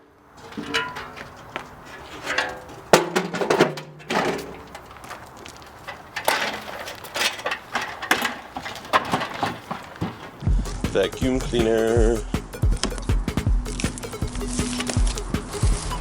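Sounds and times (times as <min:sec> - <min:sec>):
metal clanking and knocking: 0:00.4 - 0:13.2.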